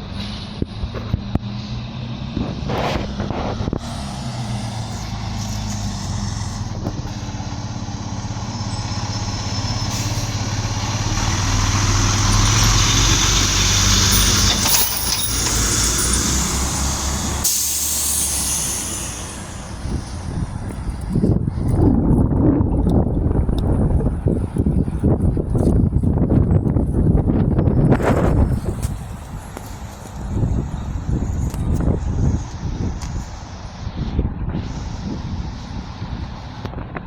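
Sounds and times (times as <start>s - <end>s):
fire engine diesel engine running: 0.0s - 37.0s
air brakes hissing: 3.8s - 11.2s, 12.2s - 21.2s.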